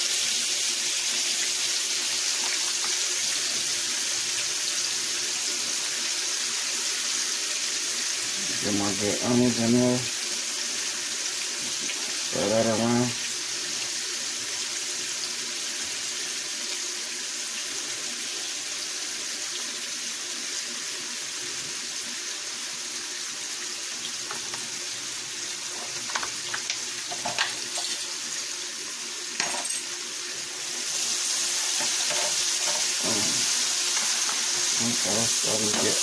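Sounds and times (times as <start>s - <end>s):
onions sizzling in a frying pan: 0.0s - 36.0s
utensil clinking and scraping pan: 25.7s - 28.1s, 29.4s - 29.9s, 31.6s - 33.1s.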